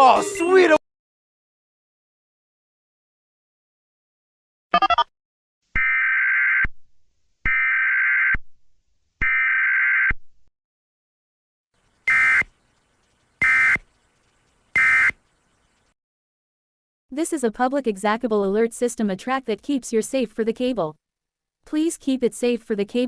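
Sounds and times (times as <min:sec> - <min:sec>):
digital data chirps: 0:12.1 - 0:12.5, 0:13.4 - 0:13.9, 0:14.7 - 0:15.2
harsh warbling data tones: 0:13.4 - 0:13.9.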